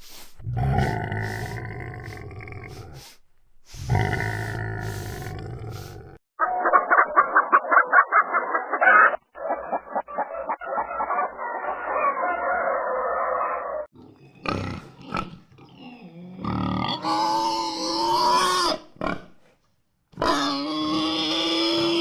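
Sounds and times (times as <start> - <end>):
pig grunting: 0.0 - 19.4, 20.2 - 22.0
pig squealing: 3.9 - 19.2, 20.2 - 22.0.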